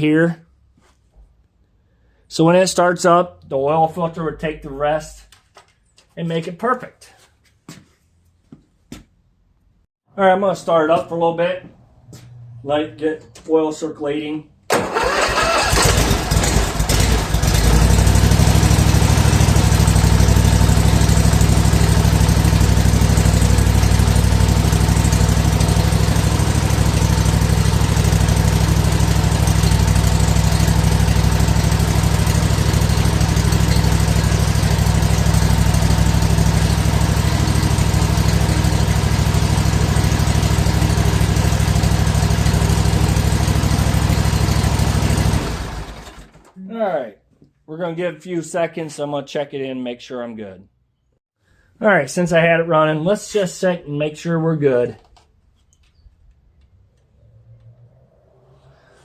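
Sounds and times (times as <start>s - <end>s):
riding mower engine running: 14.7s - 46.5s.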